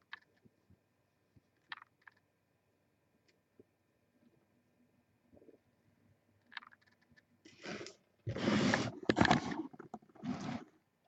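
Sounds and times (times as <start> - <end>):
rustling and scraping: 6.8 - 10.8.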